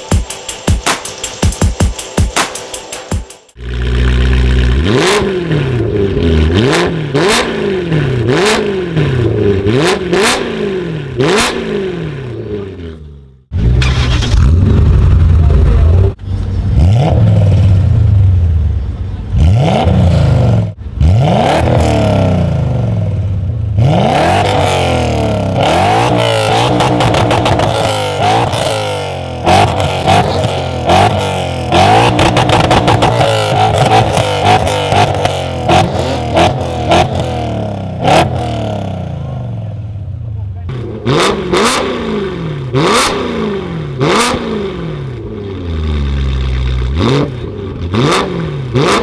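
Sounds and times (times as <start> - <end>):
car engine revving: 3.5 - 49.0
deep steady engine note: 3.6 - 28.6.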